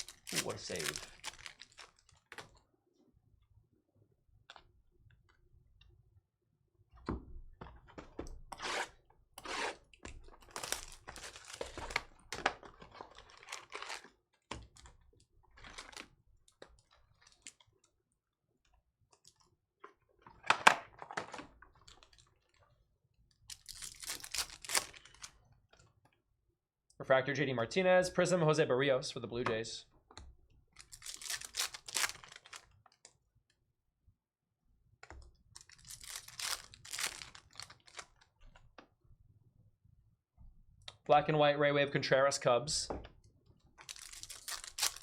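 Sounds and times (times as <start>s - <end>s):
cards being handled: 0.0s - 2.0s
wrappers tearing and crinkling: 0.0s - 2.4s, 10.4s - 14.2s, 15.6s - 16.1s, 23.5s - 25.4s, 30.8s - 33.0s, 35.6s - 38.3s, 43.8s - 45.0s.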